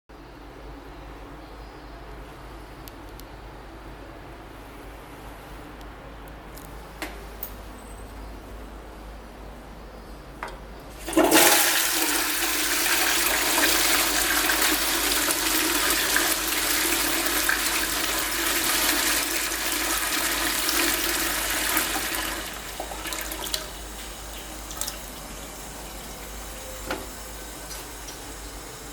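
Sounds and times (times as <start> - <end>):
toilet flushing: 10.9 - 28.9.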